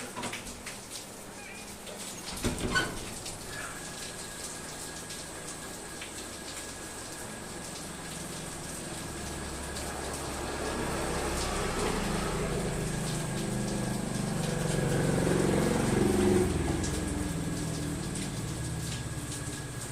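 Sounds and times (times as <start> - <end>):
vehicle engine passing by: 9.6 - 19.5.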